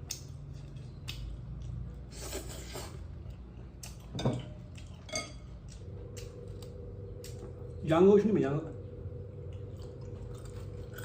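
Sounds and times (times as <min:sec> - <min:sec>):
tableware clink with ring: 0:05.1 - 0:05.4.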